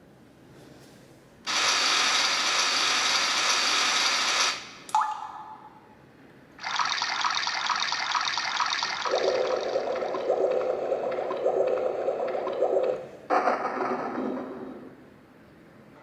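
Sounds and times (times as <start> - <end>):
keyboard water sound effect: 4.9 - 5.7, 6.6 - 14.1.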